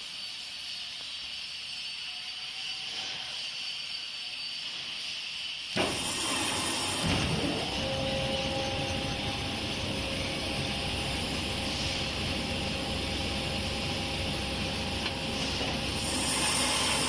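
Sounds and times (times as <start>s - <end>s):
machine motor whining and humming: 5.8s - 17.0s.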